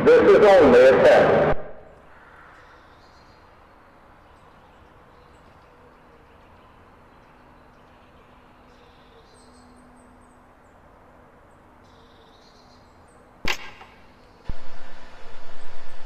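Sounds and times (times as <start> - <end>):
sharp click: 13.5 - 14.1
loud surging rushing noise: 14.5 - 16.0.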